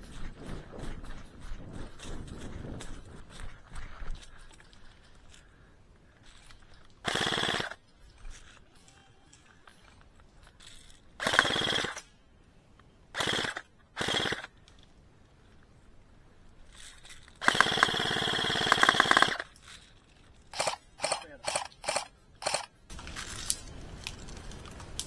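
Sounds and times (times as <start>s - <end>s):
airsoft rifle full-auto bursts: 7.0s - 7.8s, 11.2s - 12.0s, 13.1s - 14.6s, 17.4s - 19.5s, 20.5s - 22.8s.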